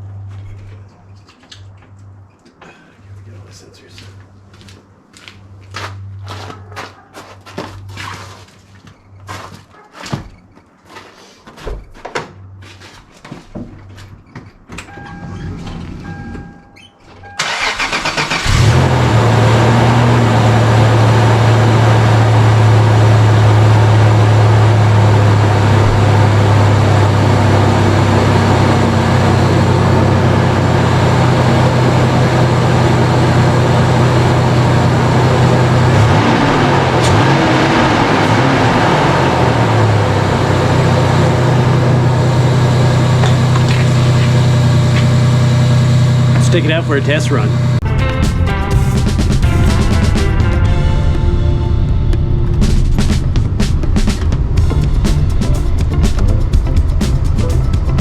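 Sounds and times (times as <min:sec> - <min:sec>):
car engine cranking and idling: 0:14.7 - 0:58.0
beeping chime: 0:14.9 - 0:15.4, 0:16.0 - 0:17.4.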